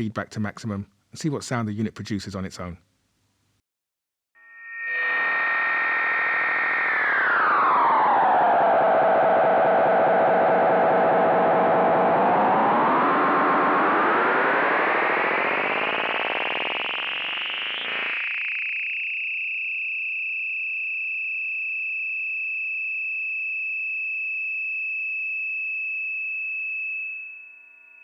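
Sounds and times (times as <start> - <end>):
delay effect oscillating buzz: 4.4 - 22.4.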